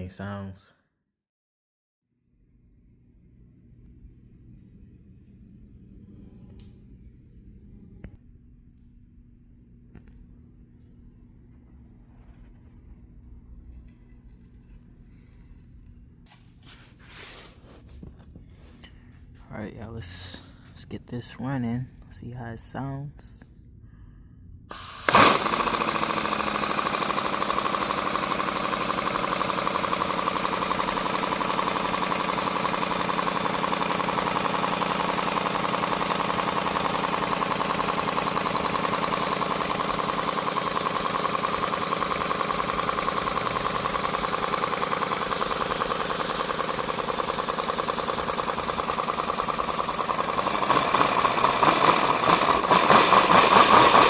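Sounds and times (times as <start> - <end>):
compressed-air engine running: 24.7 - 54.0.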